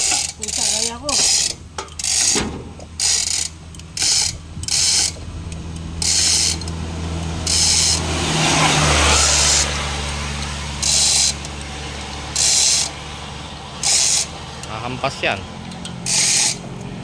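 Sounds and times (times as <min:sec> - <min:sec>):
hoist chain rattling through ratchet: 0:00.0 - 0:06.8, 0:07.4 - 0:08.0, 0:10.8 - 0:11.6, 0:12.3 - 0:13.0, 0:13.8 - 0:14.7, 0:15.7 - 0:16.7.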